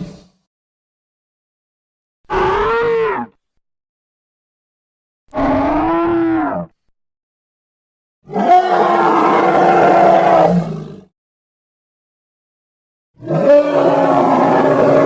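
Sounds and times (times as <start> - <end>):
dinosaur roar: 8.3 - 11.1, 13.2 - 15.0.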